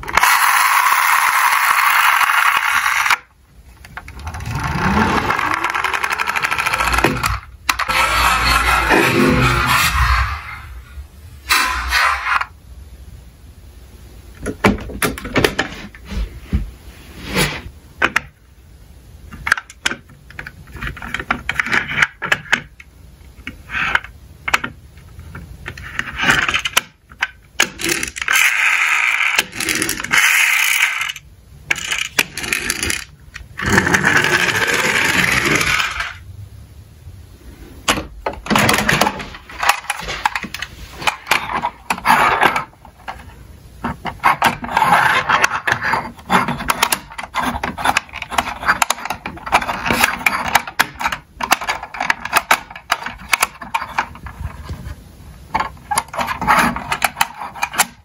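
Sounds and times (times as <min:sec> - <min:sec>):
toy cars clicking and clattering: 0:00.0 - 0:03.3, 0:03.9 - 0:09.9, 0:23.4 - 0:36.2, 0:38.5 - 0:54.4, 0:55.5 - 0:58.0
toy cars rolling down slope: 0:00.0 - 0:03.3, 0:03.9 - 0:10.7, 0:11.5 - 0:12.6, 0:25.6 - 0:36.2, 0:38.4 - 0:54.7, 0:55.5 - 0:58.0.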